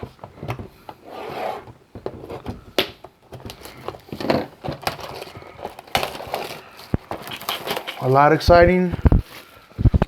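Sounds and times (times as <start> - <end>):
cardboard rubbing and scraping: 1.0 - 2.6.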